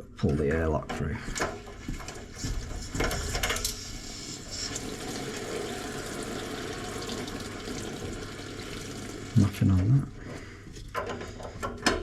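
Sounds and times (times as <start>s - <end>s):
water rushing through pipes: 4.0s - 10.1s.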